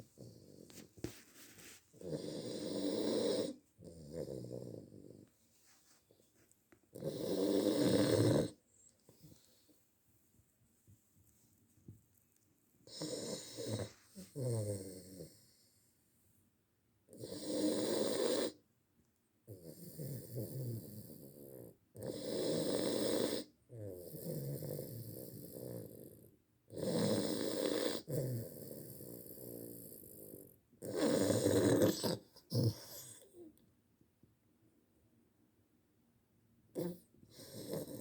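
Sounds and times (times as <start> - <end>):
person snoring: 2.0 - 5.2, 7.0 - 8.6, 12.9 - 15.4, 26.8 - 33.3, 36.8 - 38.0.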